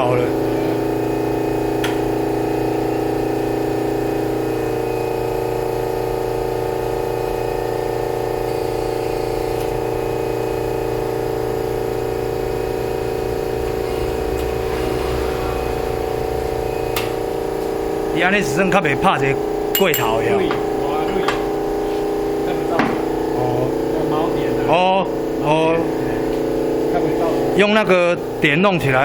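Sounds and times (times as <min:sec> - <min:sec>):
workshop motor whirring: 0:00.4 - 0:18.1.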